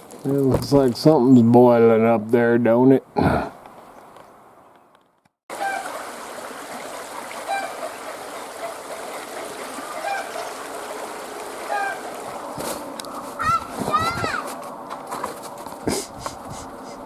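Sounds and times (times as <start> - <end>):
creek water rushing: 5.5 - 17.0.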